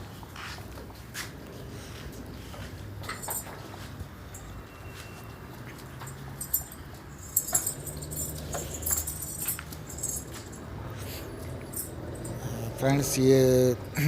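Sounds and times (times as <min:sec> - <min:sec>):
goats moving about: 0:00.0 - 0:12.3
light metallic jangling: 0:02.8 - 0:12.5.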